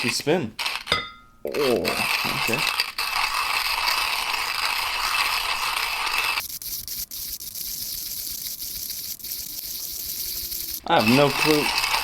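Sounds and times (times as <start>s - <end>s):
coffee beans crunching in hand grinder: 1.5s - 12.0s.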